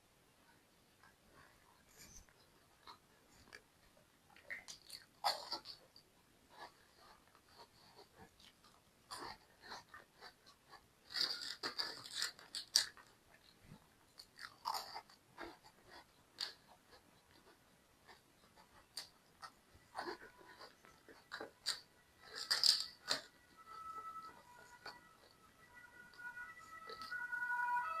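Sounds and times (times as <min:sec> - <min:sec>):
crisp pastry crunching: 0:08.2 - 0:17.5, 0:18.9 - 0:28.0.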